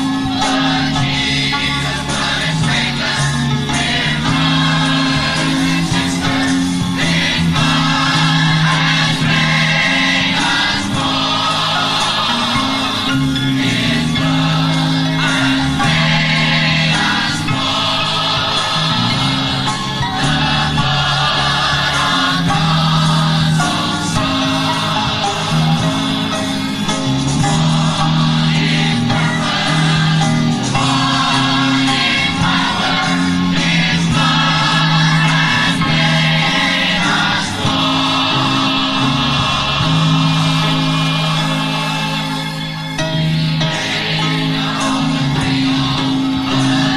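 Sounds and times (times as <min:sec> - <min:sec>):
congregation singing a hymn: 0:00.0 - 0:46.9
instrumental accompaniment: 0:00.0 - 0:46.9.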